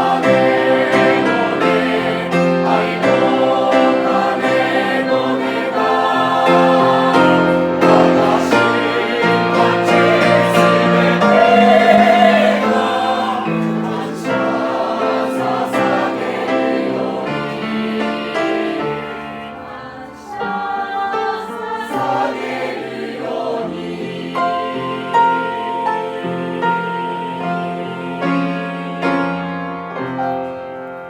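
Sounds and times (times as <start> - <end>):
choir singing a hymn: 0.0 - 30.9.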